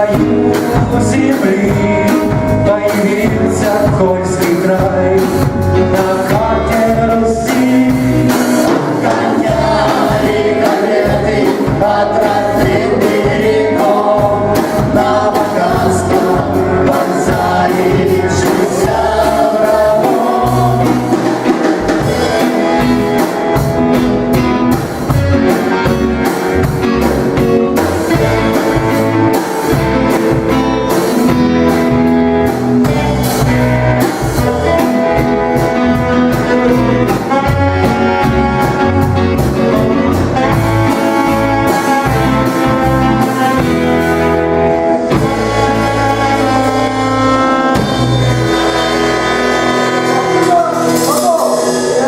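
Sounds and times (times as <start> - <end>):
rock band playing live: 0.0 - 52.0
steady drum beat: 0.0 - 52.0.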